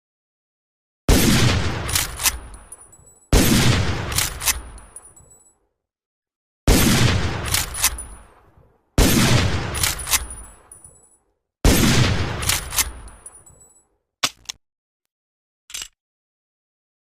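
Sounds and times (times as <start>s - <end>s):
rifle shots echoing: 1.1s - 2.7s, 3.4s - 5.0s, 6.7s - 8.4s, 9.0s - 10.8s, 11.7s - 13.2s
rifle lever clicking: 7.5s - 8.0s, 9.8s - 10.5s, 12.4s - 13.4s, 15.7s - 16.0s.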